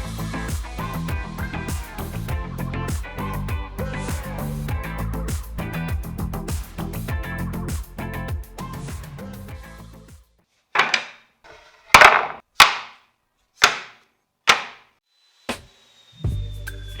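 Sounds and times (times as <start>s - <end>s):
background music: 0.0s - 10.2s, 16.3s - 17.0s.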